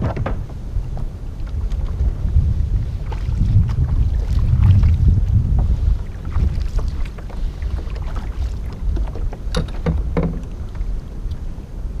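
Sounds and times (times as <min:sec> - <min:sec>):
wind rumble on microphone: 0:00.0 - 0:12.0
short knocks: 0:08.9 - 0:10.6.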